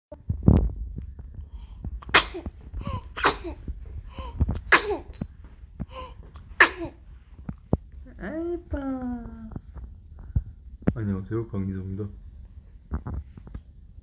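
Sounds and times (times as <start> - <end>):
infant coughing: 2.0 - 3.6, 4.2 - 5.2, 6.0 - 7.0.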